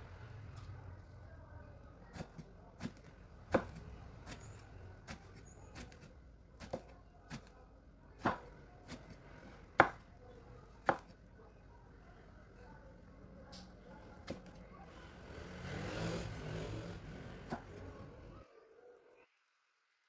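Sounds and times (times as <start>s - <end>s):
knife chopping on cutting board: 2.2s - 4.4s, 6.6s - 7.5s, 8.2s - 9.2s, 9.8s - 10.0s, 10.8s - 11.1s.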